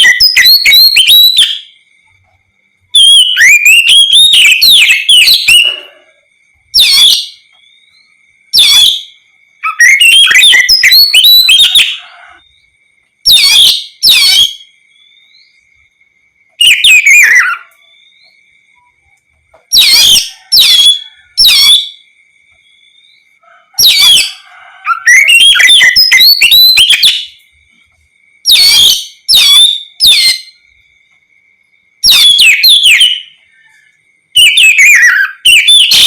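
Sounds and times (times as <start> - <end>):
bird singing whistles and trills: 0.0 - 2.3, 2.9 - 15.8, 16.6 - 27.6, 28.4 - 30.8, 32.0 - 36.0
faint steady high tone: 0.0 - 28.5.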